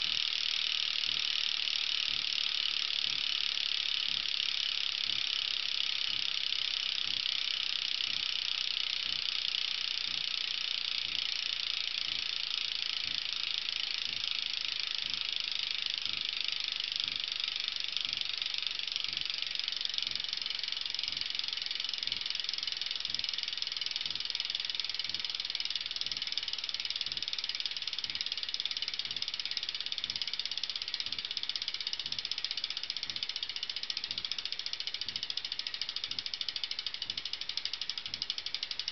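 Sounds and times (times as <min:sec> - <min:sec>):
bicycle freewheel ratcheting: 0:00.0 - 0:38.9.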